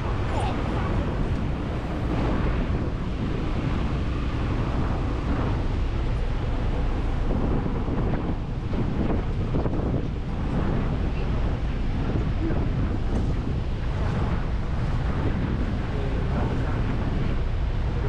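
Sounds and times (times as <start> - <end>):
waterfall roaring: 0.0 - 2.1
wind buffeting microphone: 0.0 - 18.0.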